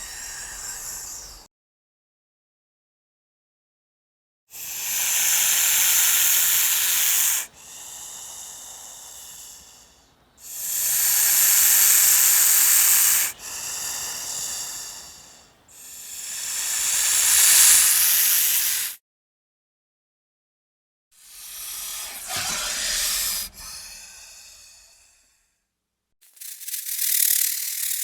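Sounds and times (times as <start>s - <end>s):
snake hissing: 0.0s - 1.5s, 4.6s - 19.0s, 21.2s - 25.2s, 26.2s - 28.0s.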